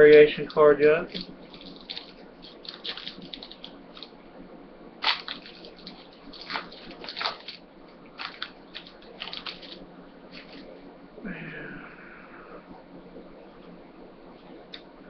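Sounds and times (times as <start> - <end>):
trading cards rustling and clicking: 1.1 - 4.1, 5.0 - 7.6, 8.2 - 10.7.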